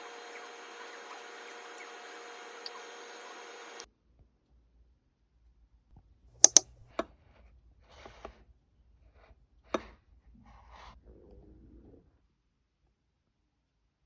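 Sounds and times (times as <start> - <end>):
sharp taps or clicks: 6.4 - 7.0.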